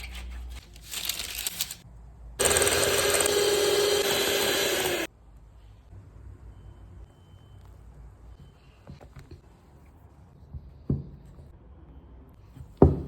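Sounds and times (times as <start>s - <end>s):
electric mixer motor hum: 2.4s - 5.1s.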